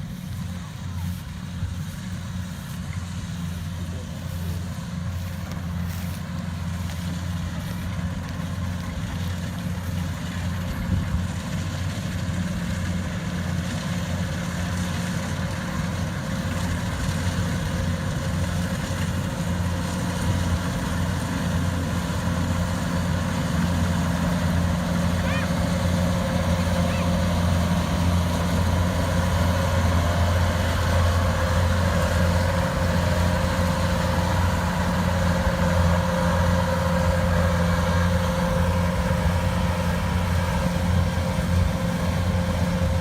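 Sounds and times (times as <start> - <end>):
harvester engine drone: 0.0 - 43.0.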